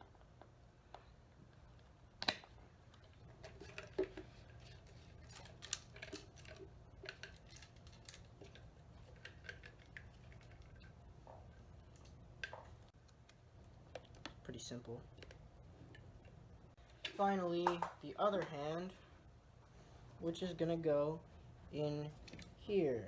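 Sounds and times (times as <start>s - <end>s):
faint low hum: 0.0s - 23.0s
plastic parts clicking and rustling: 2.2s - 13.3s.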